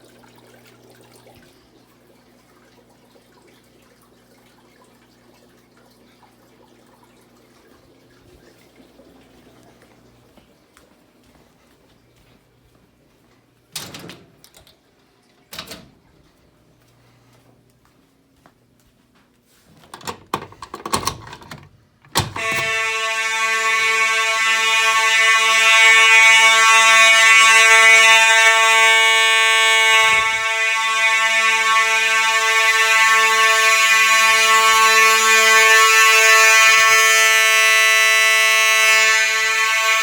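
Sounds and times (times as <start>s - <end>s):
fire alarm horn buzzing: 22.2s - 40.0s.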